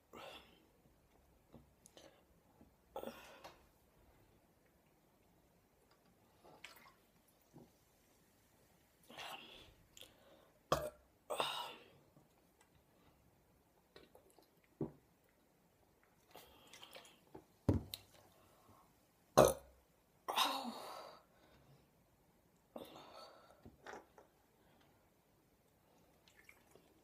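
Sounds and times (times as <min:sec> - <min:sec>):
woman burping: 0:19.4 - 0:19.7.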